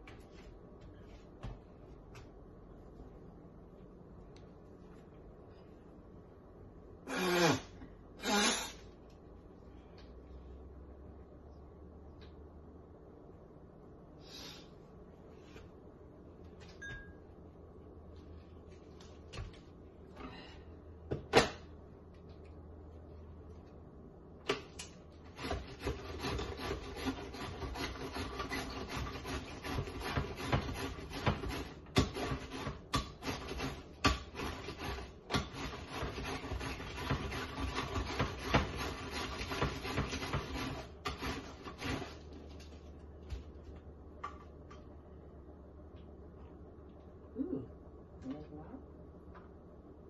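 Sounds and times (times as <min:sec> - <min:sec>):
vegetables rasping on grater: 0:25.3 - 0:42.3.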